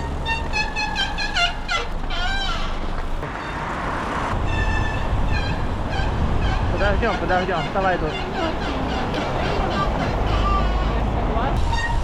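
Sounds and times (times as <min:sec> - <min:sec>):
bicycle disc brakes squealing: 0:11.6 - 0:12.0.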